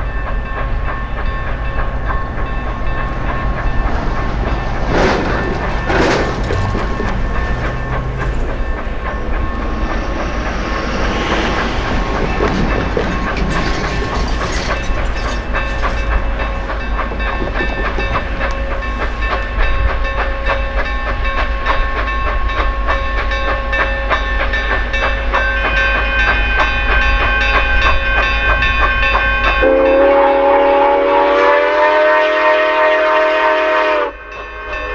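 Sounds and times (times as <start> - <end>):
train rumbling and clattering on rails: 0.0 - 34.9
train whistle: 29.2 - 34.9.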